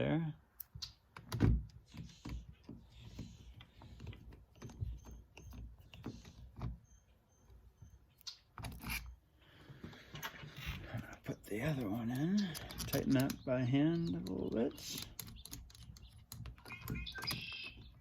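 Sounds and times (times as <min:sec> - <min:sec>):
hand tools clicking and knocking: 0:11.6 - 0:18.0.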